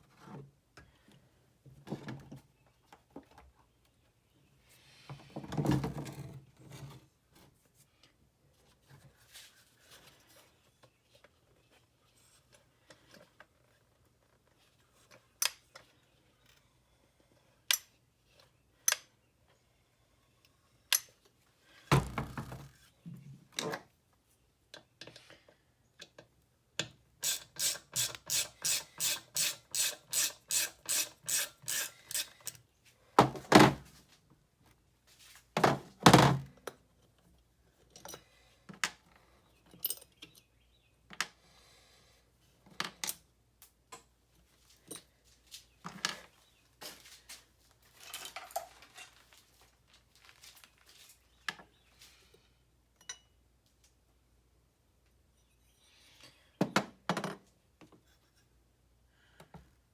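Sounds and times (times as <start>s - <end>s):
even ratchet-like clicks: 27.2s - 32.6s.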